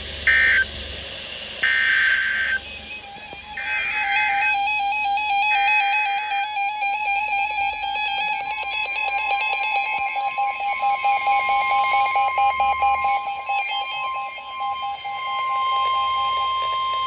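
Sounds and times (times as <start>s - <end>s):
two-tone alarm: 0.2s - 0.8s, 1.6s - 17.0s.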